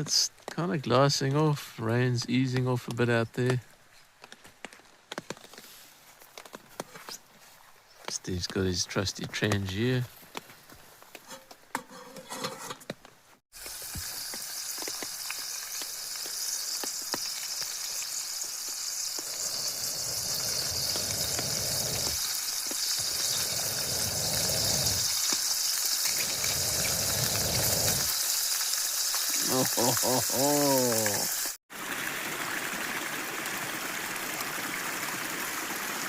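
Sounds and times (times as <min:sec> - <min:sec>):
food sizzling in a frying pan: 0:13.5 - 0:31.6.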